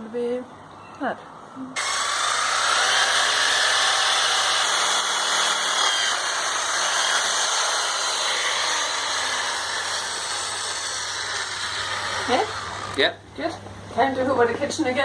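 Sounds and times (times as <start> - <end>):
power tool cutting wood: 1.8 - 13.2.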